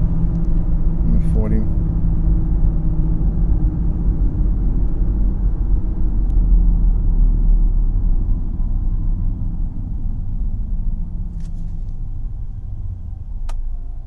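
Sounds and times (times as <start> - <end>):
road rumble: 0.0 - 14.0
car cabin hum: 7.8 - 14.0.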